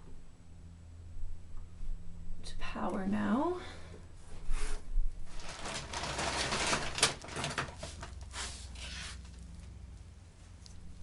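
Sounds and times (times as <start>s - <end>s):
rustling and scraping: 4.2s - 11.0s.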